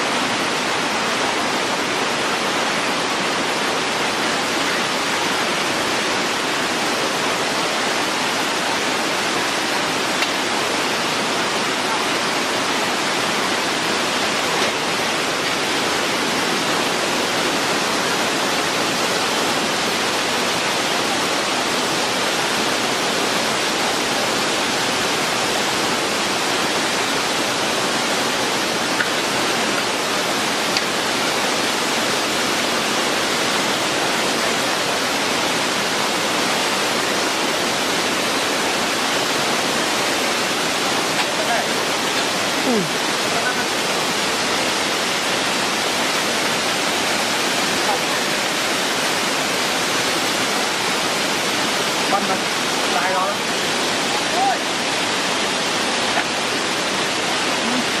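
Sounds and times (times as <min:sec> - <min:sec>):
waterfall roaring: 0:00.0 - 0:58.0.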